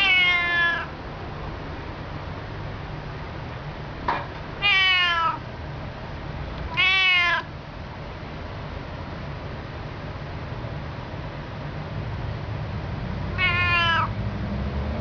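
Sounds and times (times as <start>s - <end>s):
cat meowing: 0.0s - 0.9s, 4.6s - 5.4s, 6.7s - 7.5s, 13.3s - 14.1s
steady low hum: 0.0s - 13.5s.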